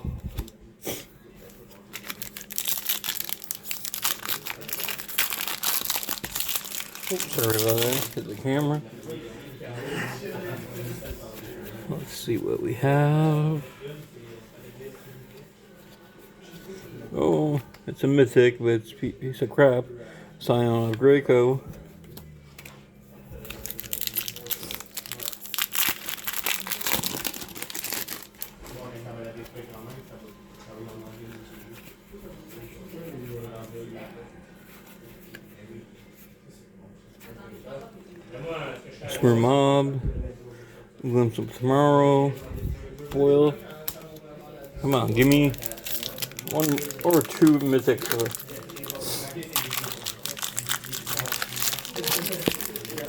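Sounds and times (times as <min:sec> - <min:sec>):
plastic wrapper crinkling: 0:01.7 - 0:08.8, 0:23.4 - 0:28.8, 0:44.8 - 0:53.0.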